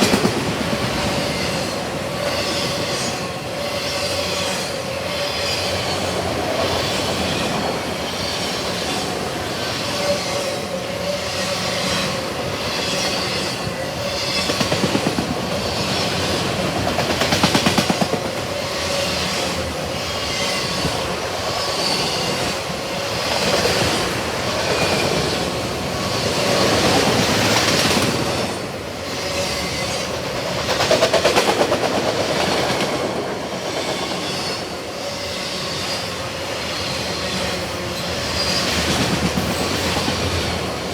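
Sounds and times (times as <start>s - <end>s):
train wheels clacking over rail joints: 0.0s - 3.3s, 11.4s - 36.0s, 38.0s - 40.8s.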